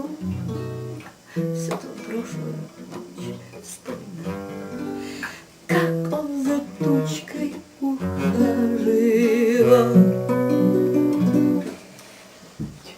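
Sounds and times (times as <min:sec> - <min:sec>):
woman singing: 0:00.0 - 0:00.4, 0:01.4 - 0:04.5, 0:05.7 - 0:10.8
strummed acoustic guitar: 0:00.0 - 0:12.0.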